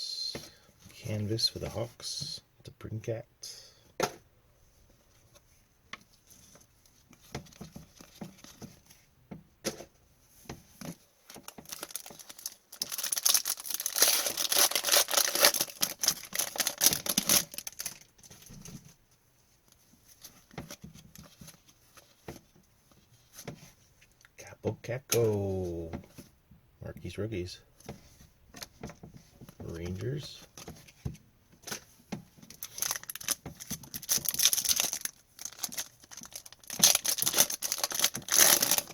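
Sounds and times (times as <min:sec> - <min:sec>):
cards clicking and rustling: 0:10.8 - 0:18.4, 0:32.5 - 0:38.9
pack wrapper tearing and crinkling: 0:11.4 - 0:18.1, 0:32.6 - 0:38.9.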